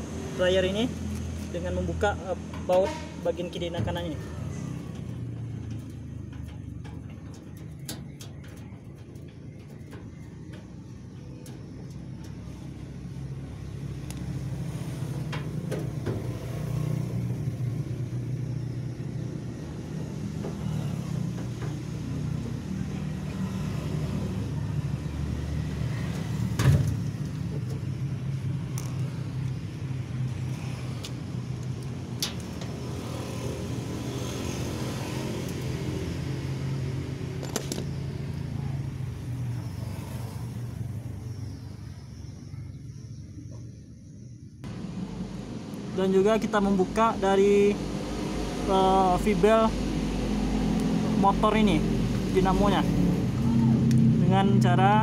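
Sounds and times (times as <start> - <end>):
low mechanical rumble: 0.0 - 33.1, 40.4 - 50.4.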